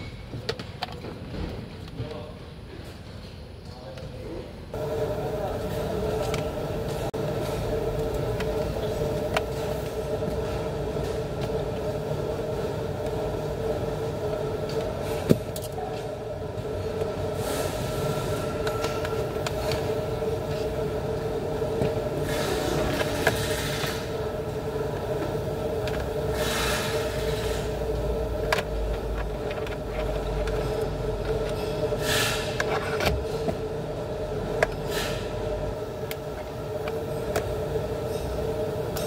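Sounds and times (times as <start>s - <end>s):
steady mechanical hum: 0.0s - 39.0s.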